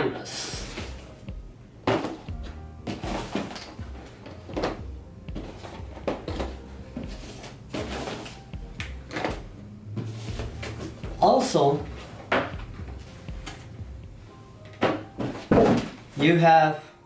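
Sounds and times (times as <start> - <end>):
items knocking when set down: 1.8 - 8.4, 9.1 - 11.0, 11.9 - 12.7, 14.6 - 16.1.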